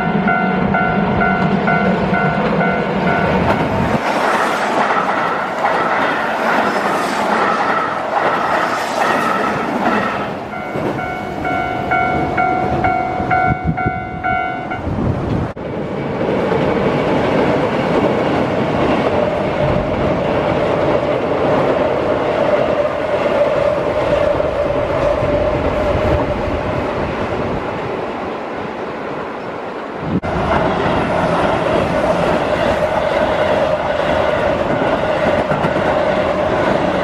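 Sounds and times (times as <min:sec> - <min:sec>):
train rumbling across steel bridge: 0:00.0 - 0:37.0
pulsing signal tone: 0:10.5 - 0:14.9.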